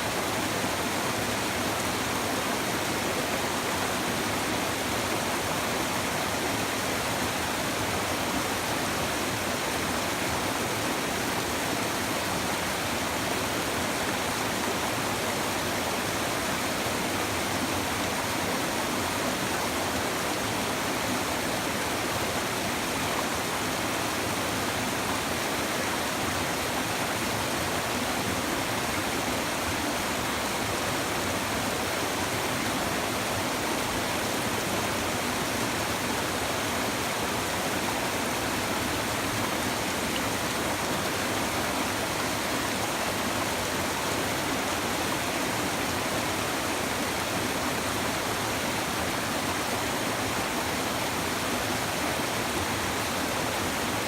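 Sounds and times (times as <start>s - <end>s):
river babbling over stones: 0.0s - 54.0s.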